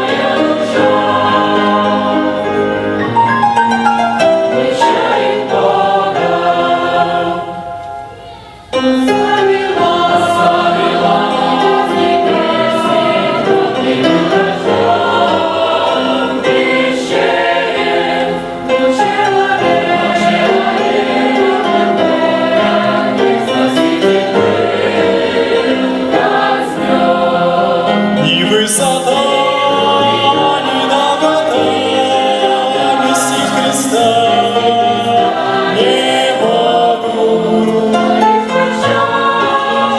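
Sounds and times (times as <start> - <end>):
choir singing: 0.0 - 39.9.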